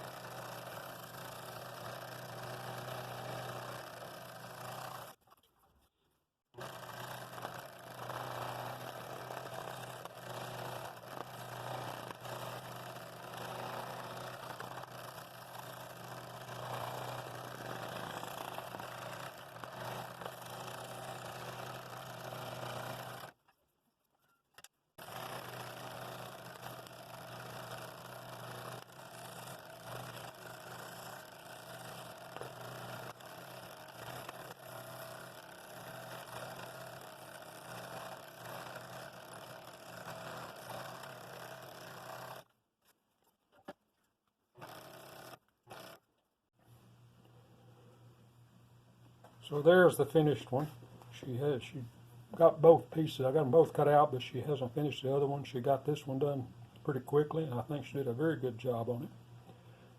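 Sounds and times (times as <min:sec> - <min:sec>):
scroll saw cutting wood: 0:00.0 - 0:05.2, 0:06.6 - 0:23.4, 0:25.0 - 0:42.5.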